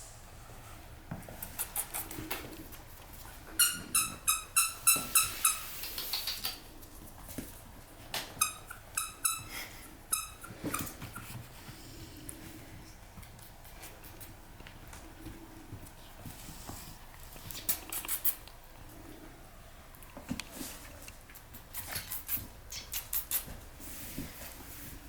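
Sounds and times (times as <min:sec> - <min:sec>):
puppy squeaking: 0:03.6 - 0:06.6.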